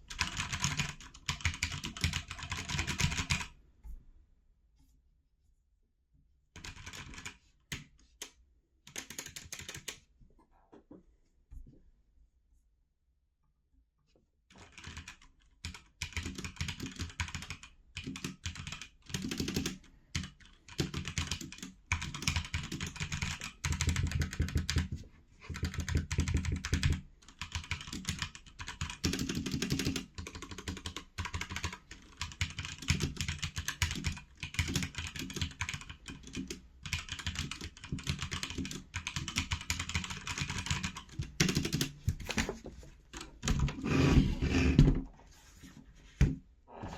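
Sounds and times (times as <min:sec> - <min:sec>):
mechanical keyboard typing: 0:00.1 - 0:03.5, 0:06.6 - 0:07.4, 0:08.9 - 0:10.0, 0:14.6 - 0:24.9, 0:25.5 - 0:42.4.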